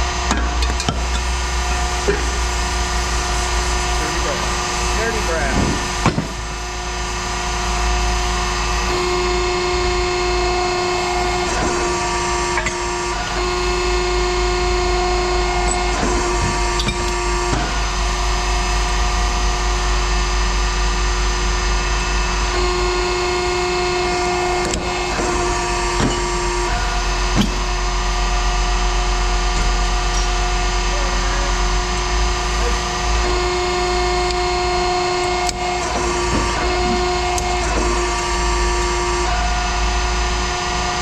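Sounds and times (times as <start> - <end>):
machinery low hum: 0.0 - 41.0
mid-pitched machine whine: 0.0 - 41.0
scattered knocks: 5.5 - 6.6.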